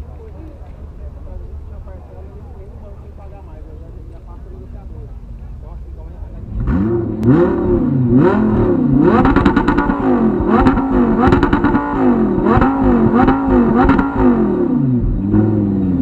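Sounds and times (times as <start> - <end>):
car engine revving: 6.1 - 16.0.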